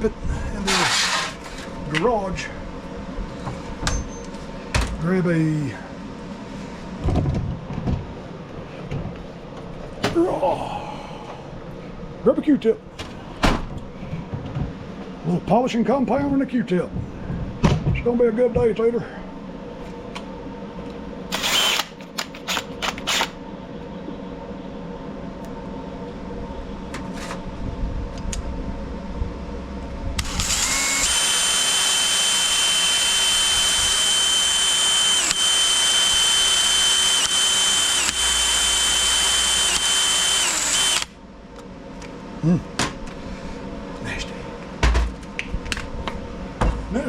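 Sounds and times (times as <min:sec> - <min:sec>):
small power drill spinning: 0:00.7 - 0:01.4, 0:21.3 - 0:21.9, 0:30.2 - 0:41.1.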